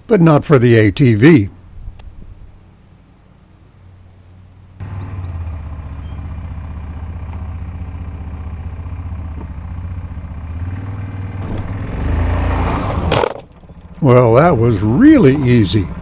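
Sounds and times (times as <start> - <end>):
atv engine running: 3.6 - 16.0.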